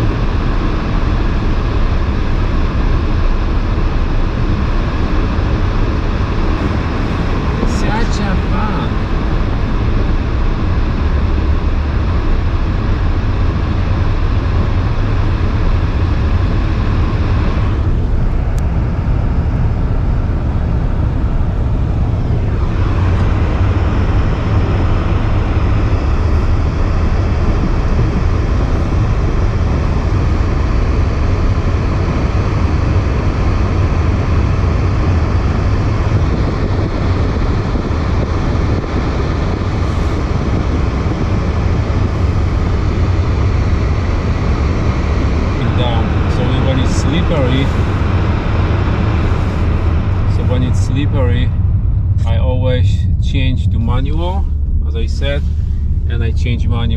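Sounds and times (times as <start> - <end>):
car engine and tyres rumbling: 0.0 - 56.9.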